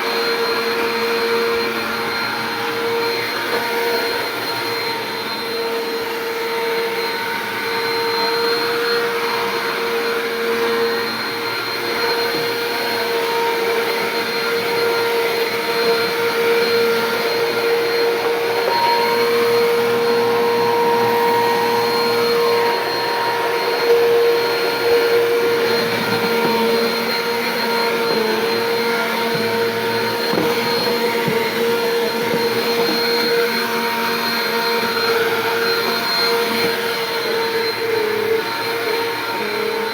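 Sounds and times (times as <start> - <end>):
upright vacuum cleaner running: 0.0 - 39.9.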